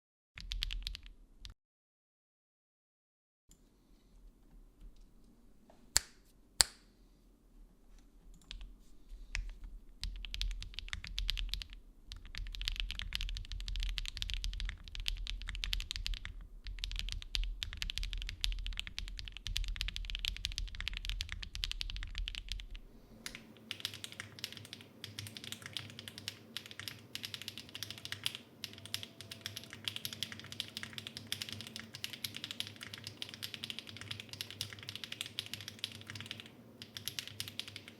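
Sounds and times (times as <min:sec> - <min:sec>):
mechanical keyboard typing: 0:00.4 - 0:01.6, 0:09.4 - 0:37.9.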